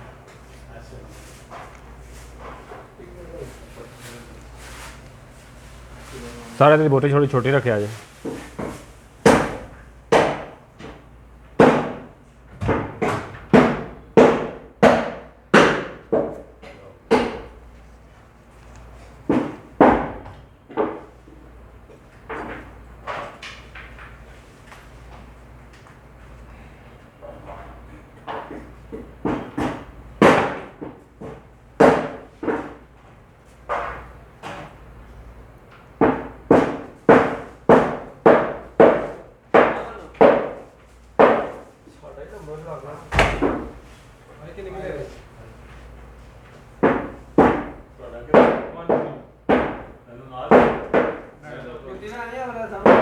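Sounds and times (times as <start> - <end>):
cleaver chopping meat on wood: 9.3 - 11.0, 11.6 - 16.4, 29.3 - 32.8, 36.0 - 40.6, 41.2 - 41.6, 46.8 - 51.3
cleaver chopping meat: 11.6 - 12.1, 36.0 - 40.6.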